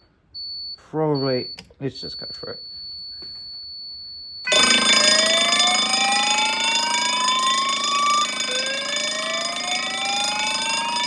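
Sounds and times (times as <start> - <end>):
electric fire bell ringing: 4.4 - 11.0
fire alarm rising whoop tone: 4.4 - 11.0.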